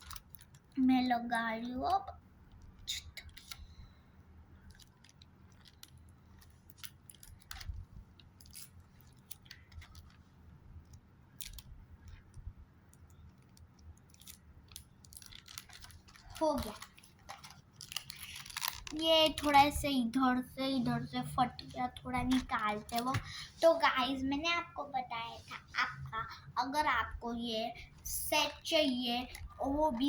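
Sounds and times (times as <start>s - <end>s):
paper stickers handled: 14.2s - 19.6s.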